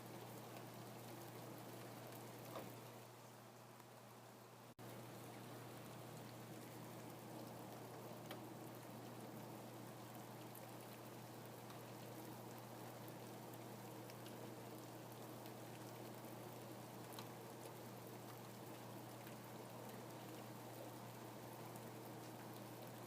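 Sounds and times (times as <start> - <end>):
steady rain hiss: 0.0 - 23.0
single raindrops ticking: 4.8 - 9.4, 10.0 - 23.0.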